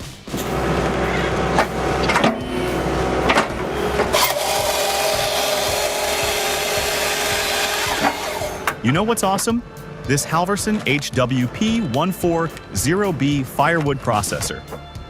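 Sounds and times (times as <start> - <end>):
wood-cutting machinery running: 0.3 - 12.1.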